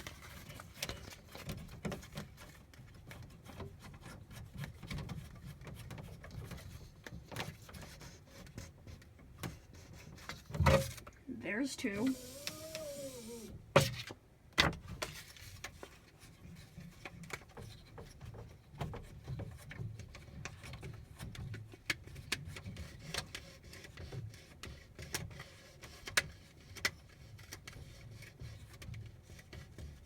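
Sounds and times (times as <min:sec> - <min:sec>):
paper shifting: 0:11.9 - 0:13.6.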